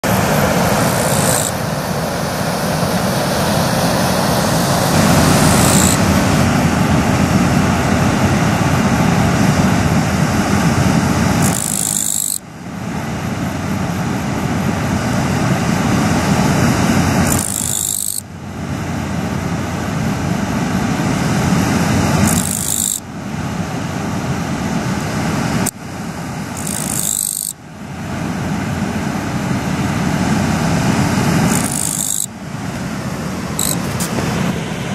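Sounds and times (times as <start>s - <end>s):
river water rushing: 0.0s - 11.6s, 27.6s - 34.9s
katydid calling: 0.8s - 1.6s, 4.9s - 6.2s, 11.4s - 12.5s, 17.2s - 18.3s, 22.2s - 23.1s, 26.5s - 27.6s, 31.5s - 32.4s, 33.6s - 33.9s.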